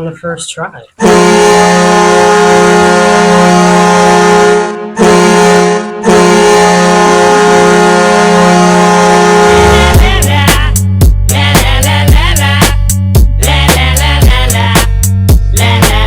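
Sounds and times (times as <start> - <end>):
deep goal horn: 1.0 - 10.3
celebration music with heavy beat: 9.5 - 16.0.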